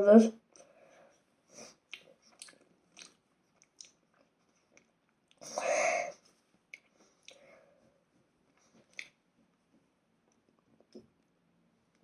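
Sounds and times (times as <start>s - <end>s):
person chewing crunchy sandwich: 1.7s - 5.4s.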